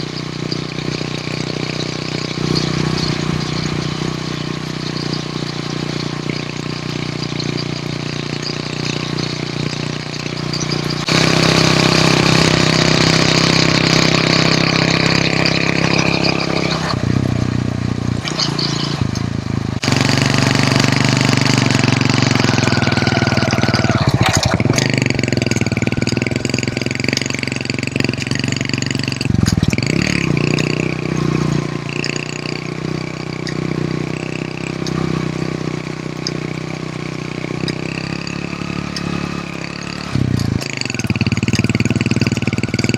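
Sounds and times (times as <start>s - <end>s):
motorcycle engine running: 0.0s - 42.9s.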